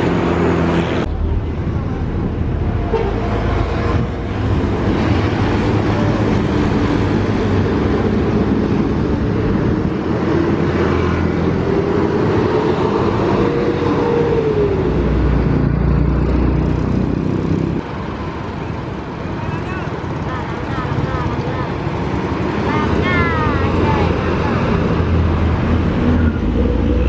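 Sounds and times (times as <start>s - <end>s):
engine rumble of large vehicles: 0.0s - 27.0s.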